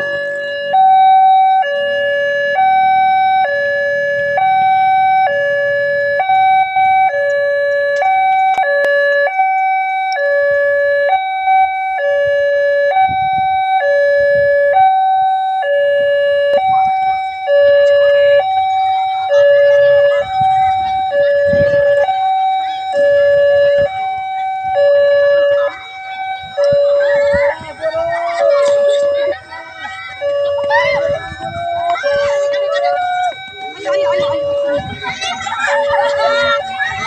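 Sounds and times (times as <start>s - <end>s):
two-tone crossing alarm: 0.0s - 37.0s.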